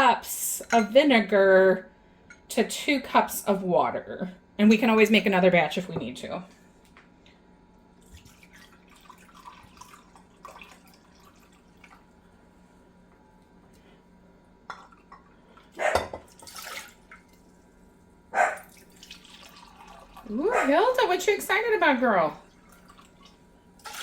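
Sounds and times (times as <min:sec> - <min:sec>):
faint liquid drips: 0:07.2 - 0:12.8, 0:14.7 - 0:21.0, 0:22.4 - 0:24.0.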